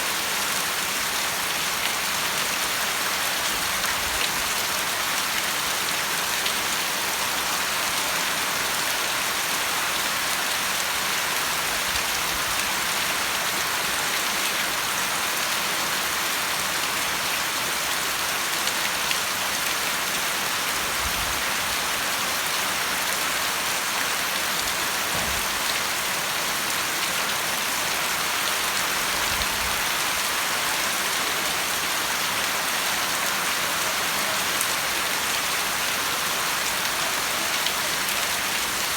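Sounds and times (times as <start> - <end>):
rain pattering: 0.2 - 38.9.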